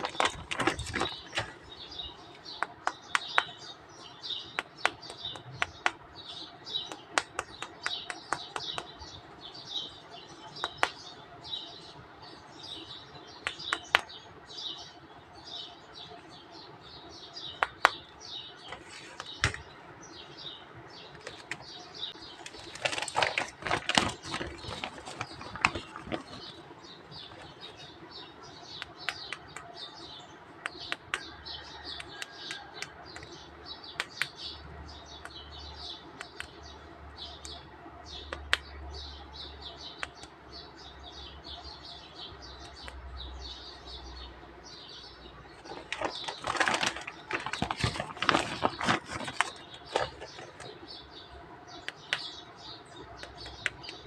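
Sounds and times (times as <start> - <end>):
plastic rustling and clicking: 0.0 - 3.6, 17.6 - 19.8, 21.0 - 28.0, 45.5 - 50.9
plastic crackling: 0.0 - 3.7, 17.6 - 19.9, 21.0 - 30.0, 45.4 - 50.9.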